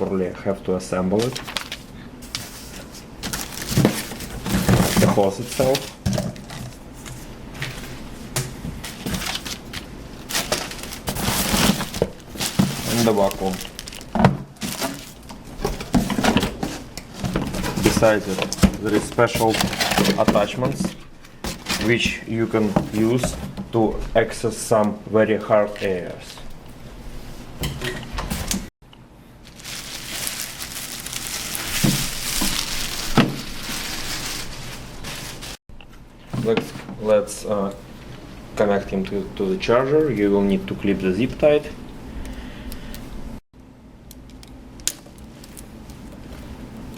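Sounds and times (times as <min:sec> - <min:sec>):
packaging rustling: 0:01.1 - 0:08.2, 0:08.8 - 0:23.3, 0:29.4 - 0:35.6.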